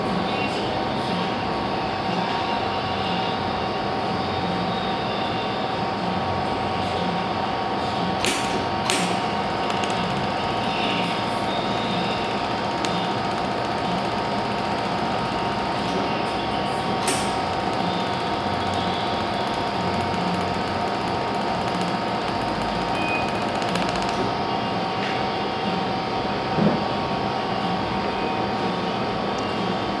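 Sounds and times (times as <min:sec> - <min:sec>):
sharp click: 0:08.2 - 0:16.0, 0:17.0 - 0:24.3
welding machine humming: 0:08.2 - 0:16.2, 0:17.0 - 0:24.4
high-pitched whine: 0:09.0 - 0:16.1, 0:17.1 - 0:24.3.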